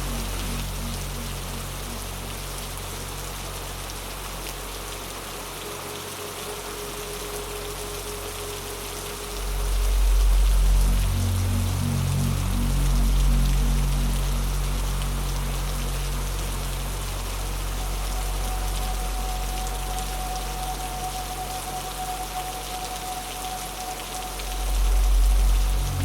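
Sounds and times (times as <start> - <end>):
low ambient drone: 0.0 - 26.0
rain falling: 0.0 - 26.0.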